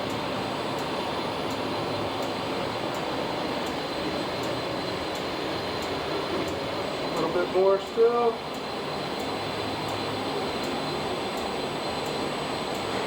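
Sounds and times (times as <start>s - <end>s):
ventilation fan running: 0.0s - 13.0s
faint regular ticks: 4.4s - 6.6s, 10.6s - 12.9s.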